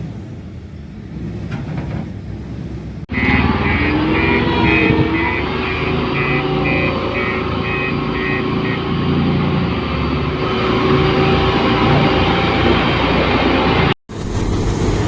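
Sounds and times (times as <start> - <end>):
diesel engine running: 0.0 - 15.0
reversing alarm beeping: 3.1 - 10.0.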